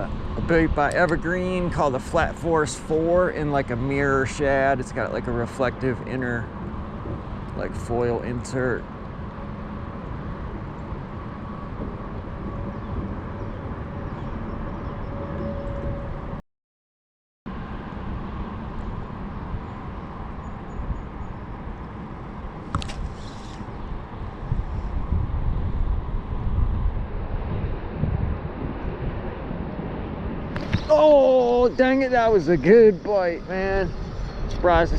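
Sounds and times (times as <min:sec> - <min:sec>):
wind buffeting microphone: 0:00.0 - 0:16.4, 0:18.1 - 0:34.9
sharp click: 0:22.7 - 0:23.6.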